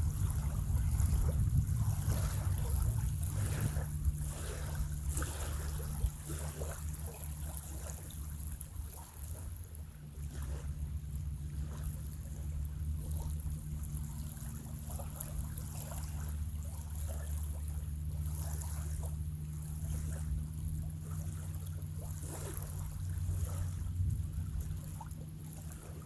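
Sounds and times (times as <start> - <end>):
wind rumbling on microphone: 0.0 - 26.0.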